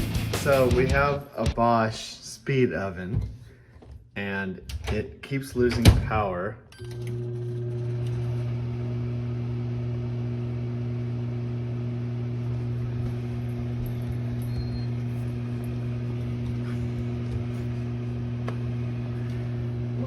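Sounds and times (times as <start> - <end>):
microwave oven humming: 6.8 - 20.0.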